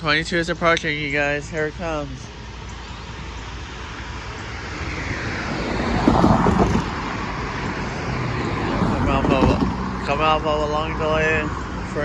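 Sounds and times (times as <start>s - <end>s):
passenger train rushing rumble: 4.7s - 11.0s.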